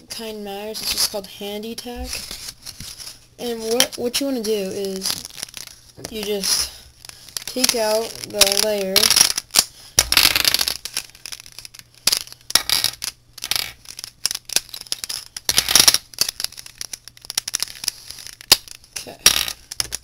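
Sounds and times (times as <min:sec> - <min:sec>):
plastic puzzle cube pieces clicking: 0:05.0 - 0:20.0.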